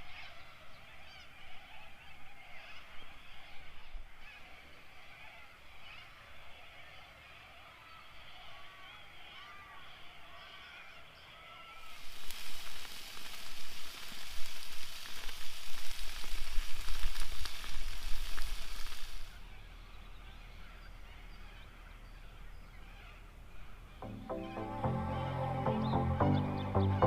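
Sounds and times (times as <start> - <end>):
food sizzling in a hot pan: 11.8 - 19.3.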